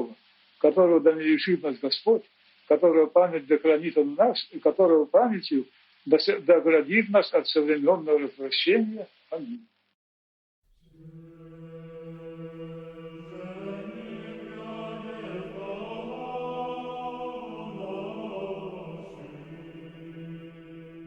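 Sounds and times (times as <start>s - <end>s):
choir singing a slow chant: 10.8s - 21.0s.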